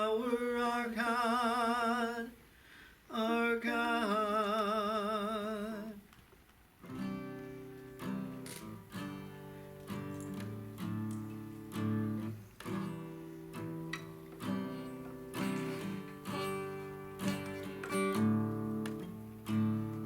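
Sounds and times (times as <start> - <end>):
acoustic guitar strumming: 6.8 - 20.0.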